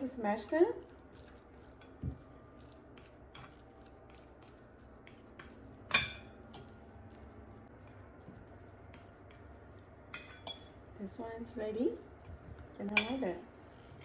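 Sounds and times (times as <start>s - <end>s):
fork mashing in a bowl: 0.0s - 14.0s
fork clinking against bowl: 2.6s - 6.7s, 8.9s - 10.8s.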